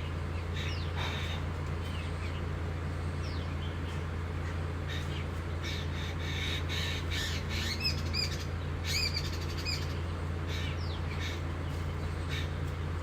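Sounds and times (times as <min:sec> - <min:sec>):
steady low hum: 0:00.0 - 0:13.0
crows cawing: 0:04.8 - 0:07.8.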